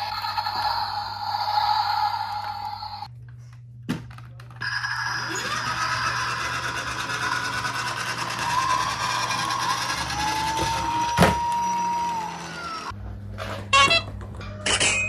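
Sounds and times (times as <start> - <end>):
toy siren electronic sound: 4.6 - 12.9.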